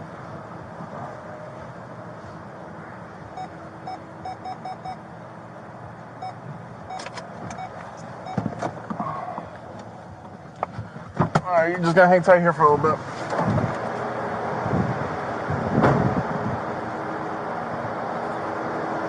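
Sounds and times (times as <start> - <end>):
car engine and road noise: 0.0 - 19.0
short electronic beeps: 3.4 - 5.0, 6.2 - 8.5.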